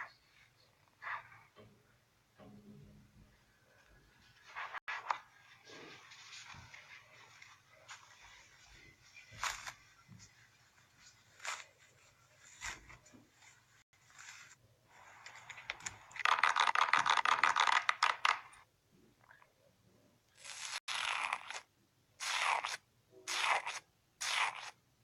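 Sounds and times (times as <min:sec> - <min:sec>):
slime squishing: 0:20.4 - 0:24.8.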